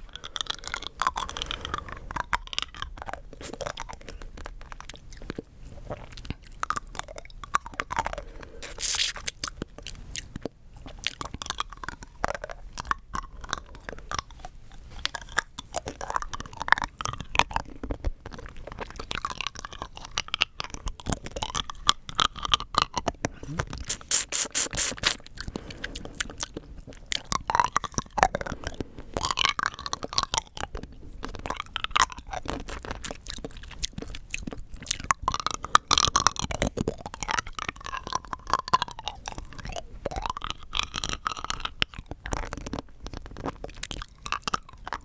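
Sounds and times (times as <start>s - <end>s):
chewing: 0.0s - 45.0s
rock candy crunching: 8.6s - 9.4s, 23.9s - 25.2s.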